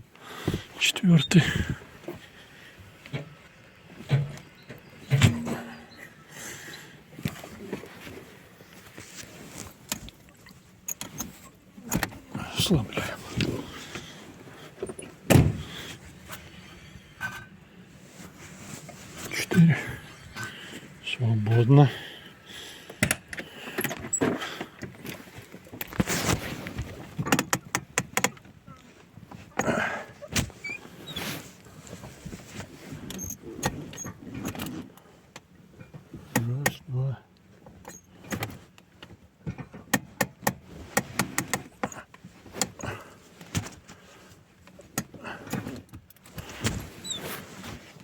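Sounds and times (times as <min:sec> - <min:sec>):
scraping rustle: 0:25.2 - 0:27.2, 0:46.4 - 0:48.0
sharp clicks and knocks: 0:27.2 - 0:28.5, 0:37.8 - 0:42.0.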